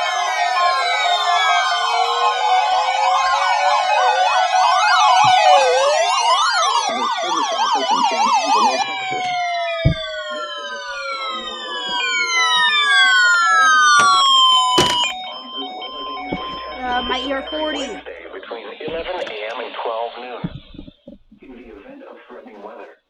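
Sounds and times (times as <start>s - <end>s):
electronic siren-like alarm tones: 0.0s - 19.3s.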